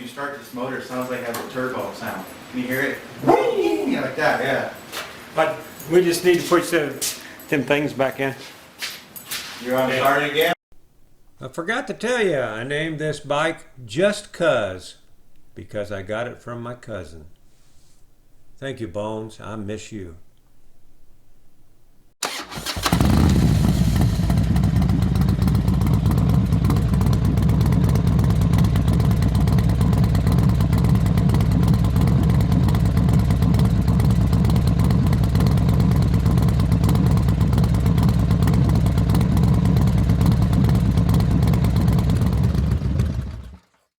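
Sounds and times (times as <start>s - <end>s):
motorcycle engine starting and running: 22.2s - 43.8s.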